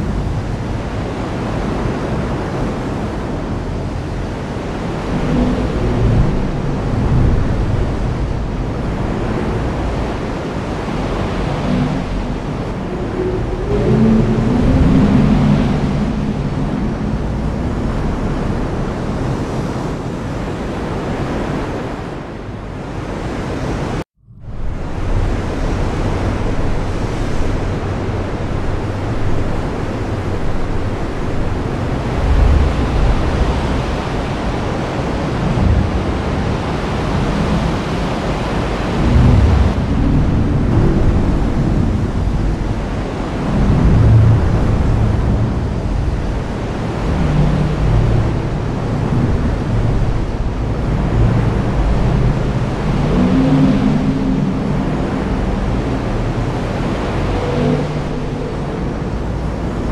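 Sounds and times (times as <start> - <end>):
thunder rumbling: 0.0 - 20.6, 24.3 - 59.9
heavy rain: 24.6 - 59.9.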